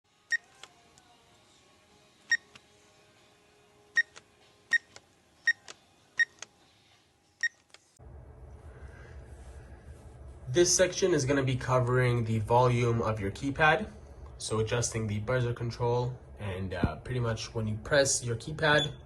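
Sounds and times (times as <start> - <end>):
keypad buzzer beeping: 4.0 - 6.4
low steady hum: 7.4 - 19.0.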